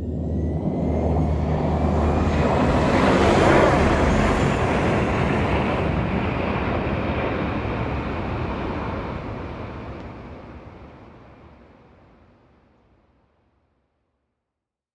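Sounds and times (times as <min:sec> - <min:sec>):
aircraft engine passing overhead: 0:00.0 - 0:11.6.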